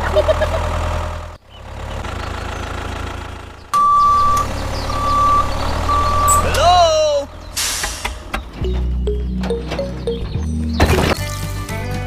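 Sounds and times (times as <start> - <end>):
vehicle engine running: 0.0 - 11.4
reversing alarm beeping: 3.8 - 6.5.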